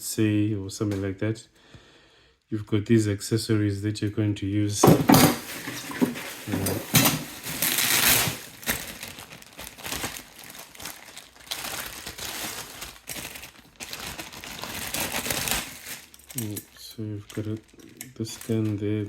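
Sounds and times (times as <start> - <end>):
plastic packaging crinkling: 4.8 - 19.0.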